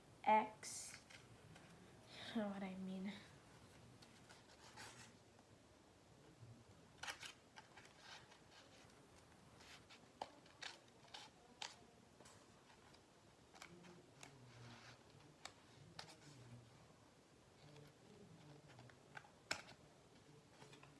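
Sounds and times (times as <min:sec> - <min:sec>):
paper and tape rustling: 0:03.6 - 0:05.2, 0:07.0 - 0:16.6.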